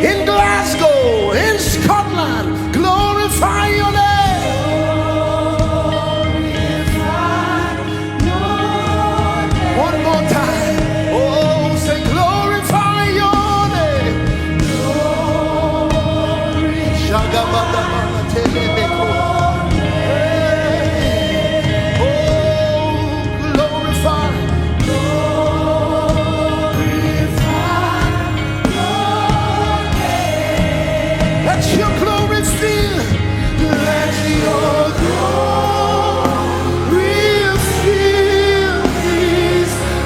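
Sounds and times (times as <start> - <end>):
choir singing: 0.0 - 40.0
keyboard and band accompaniment: 0.0 - 40.0.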